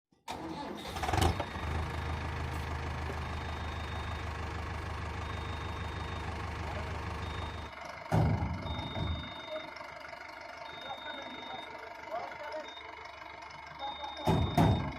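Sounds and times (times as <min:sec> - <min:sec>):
heavy vehicle engine idling: 0:01.0 - 0:14.9
loud thump: 0:14.3 - 0:14.9.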